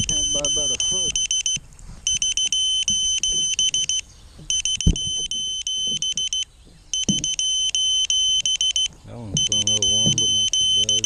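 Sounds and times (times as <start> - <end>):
electronic beeper quick beeps: 0.0 - 11.0
knock: 7.1 - 7.4.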